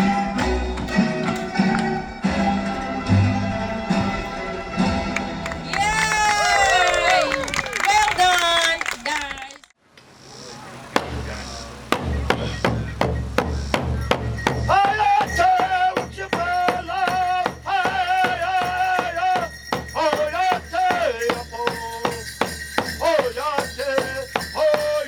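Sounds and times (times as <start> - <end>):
drum beating steadily: 10.9 - 25.0
rattle shaking: 14.0 - 25.0.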